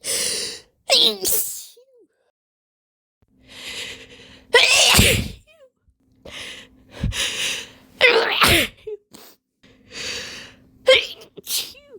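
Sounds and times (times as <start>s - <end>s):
woman sneezing: 4.6s - 5.5s, 8.1s - 8.9s.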